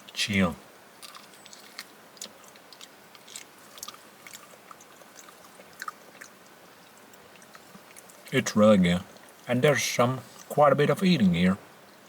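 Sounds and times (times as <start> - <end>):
person chewing meat: 1.0 - 8.3, 9.1 - 9.5, 10.2 - 10.6.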